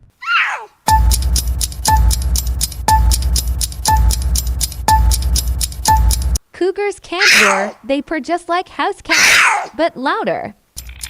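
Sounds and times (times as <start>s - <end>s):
background music with bass beat: 0.9s - 6.4s
ticking clicks: 0.9s - 6.4s, 10.8s - 11.0s.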